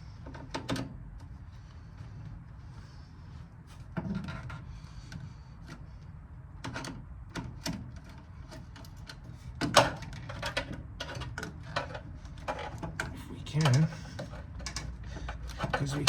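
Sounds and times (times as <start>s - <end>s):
low steady hum: 11.4s - 16.0s.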